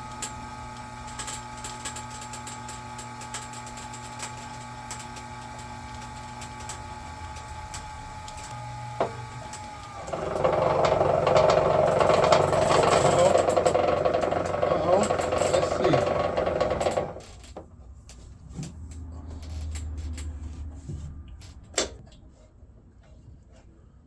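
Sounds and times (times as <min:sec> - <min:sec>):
wire stripping machine motor hum: 0:00.0 - 0:17.7
cable fed into cutting rollers: 0:00.1 - 0:17.4.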